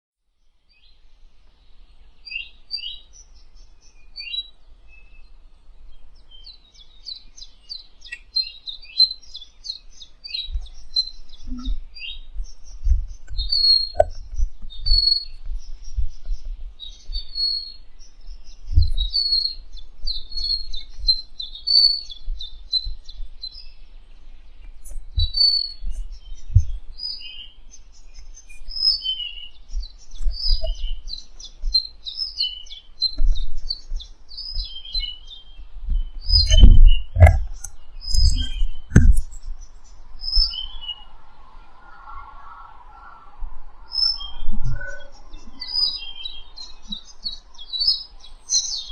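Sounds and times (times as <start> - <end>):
songbirds singing: 0.2 - 48.9
low thumps: 10.5 - 17.3, 24.6 - 26.9, 35.8 - 39.6.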